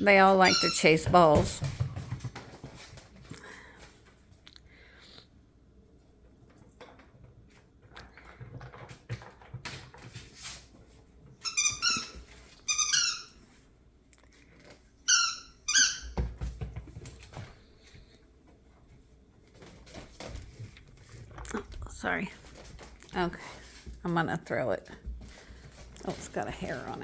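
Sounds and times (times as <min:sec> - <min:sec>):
squeaky toy squeaks: 0:00.4 - 0:01.0, 0:11.4 - 0:13.4, 0:15.1 - 0:16.2.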